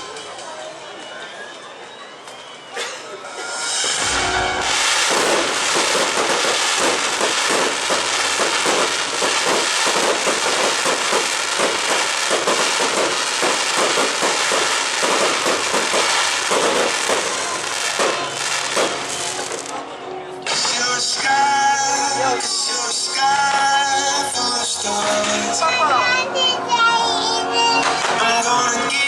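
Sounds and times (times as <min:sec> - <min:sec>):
fireworks bangs: 0:03.3 - 0:19.8.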